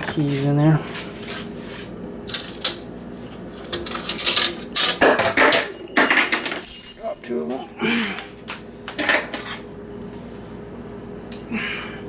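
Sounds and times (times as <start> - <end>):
metal keys jingling: 5.6 - 7.4.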